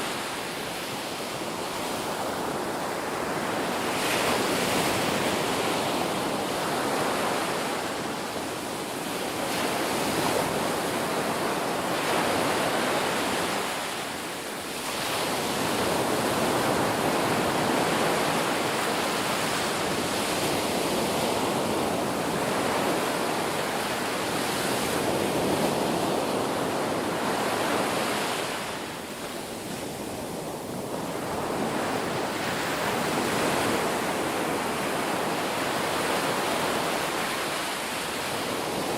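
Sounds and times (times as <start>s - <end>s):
waves breaking on a beach: 0.0s - 38.9s.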